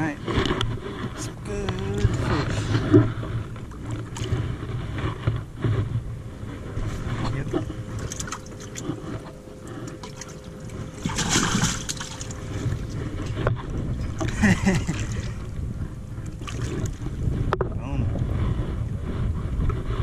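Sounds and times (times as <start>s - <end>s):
water splashing: 6.4s - 15.5s, 16.2s - 17.7s.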